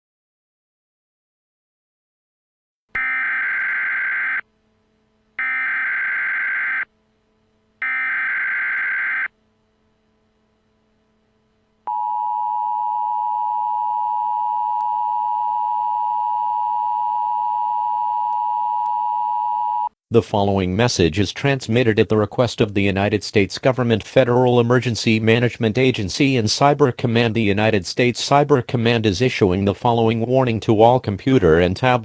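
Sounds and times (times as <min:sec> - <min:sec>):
buzzy digital data tones: 0:03.0 - 0:04.4, 0:05.4 - 0:06.8, 0:07.8 - 0:09.3
two-tone attention signal: 0:03.0 - 0:04.4, 0:05.4 - 0:06.8, 0:07.8 - 0:09.3.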